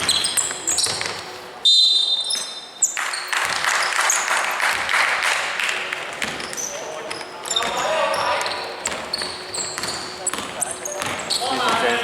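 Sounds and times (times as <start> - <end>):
sneakers squeaking on court: 0.0 - 4.2, 6.1 - 12.0
basketball bouncing: 6.1 - 6.6, 8.8 - 12.0.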